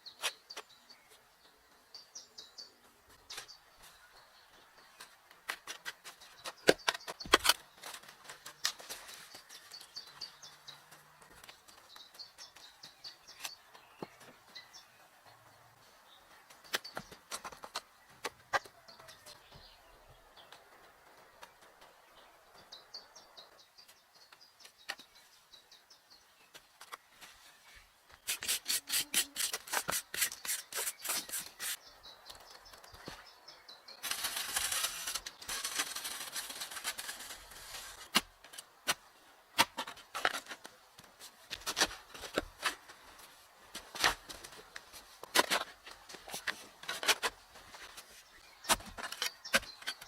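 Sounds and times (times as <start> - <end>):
quick rubbing strokes: 28.2 - 31.8, 34.0 - 38.1
rasping scraping: 28.2 - 31.8, 34.0 - 38.2.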